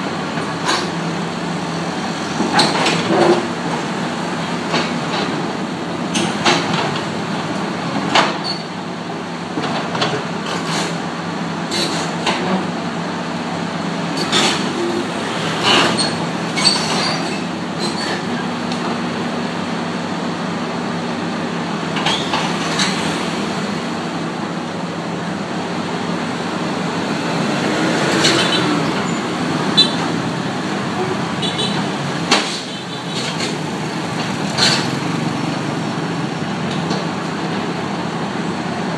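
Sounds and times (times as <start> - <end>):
diesel engine running: 10.2 - 38.9.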